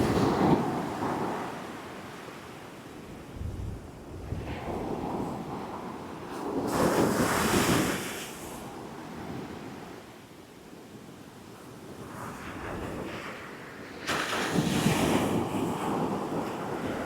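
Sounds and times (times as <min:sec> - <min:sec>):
wind buffeting microphone: 0:03.1 - 0:08.0.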